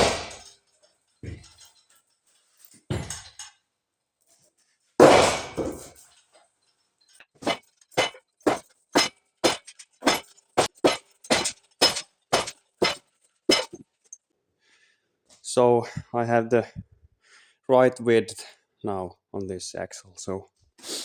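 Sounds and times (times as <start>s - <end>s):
hammer striking steel: 0.0s - 0.5s, 5.0s - 6.0s, 7.4s - 13.8s.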